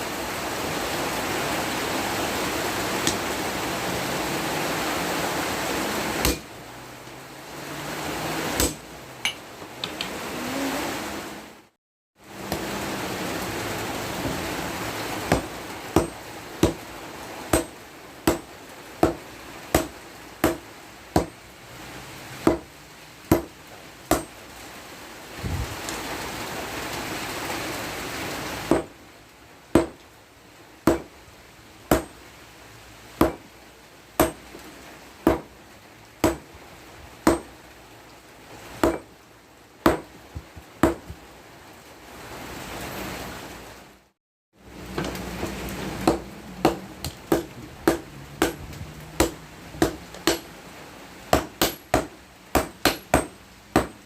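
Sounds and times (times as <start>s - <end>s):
hammer striking hot steel: 6.2s - 6.5s, 8.6s - 10.0s, 15.3s - 16.8s, 17.5s - 20.6s, 21.2s - 21.4s, 23.3s - 23.5s, 24.1s - 24.4s, 30.9s - 31.1s, 31.9s - 32.2s, 34.2s - 34.4s, 36.2s - 36.4s, 37.2s - 37.5s, 38.8s - 39.1s, 39.9s - 41.2s, 46.0s - 48.6s, 49.2s - 50.5s, 51.3s - 54.0s.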